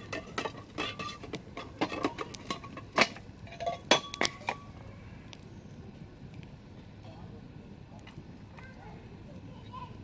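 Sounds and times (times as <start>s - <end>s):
wood popping and snapping: 0.0s - 4.7s
campfire crackling: 0.0s - 10.0s.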